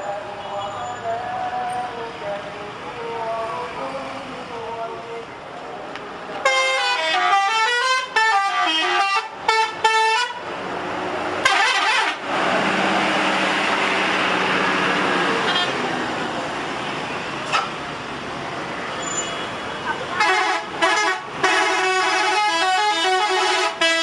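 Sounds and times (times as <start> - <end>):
multi-tone bus air horn melody: 6.4 - 10.4, 11.4 - 12.2, 19.0 - 24.0
vehicle rush: 9.0 - 21.6.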